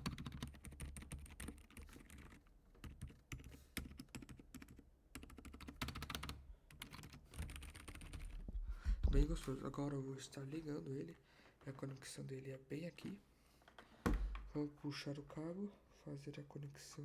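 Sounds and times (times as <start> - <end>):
quiet mechanical keyboard typing: 0.0 - 8.5.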